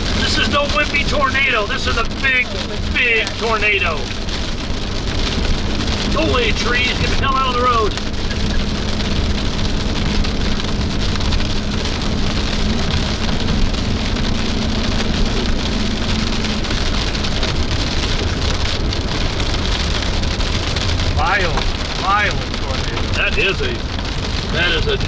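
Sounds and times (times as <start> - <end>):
heavy rain on a car: 0.0 - 25.0
low road and engine rumble: 0.0 - 25.0.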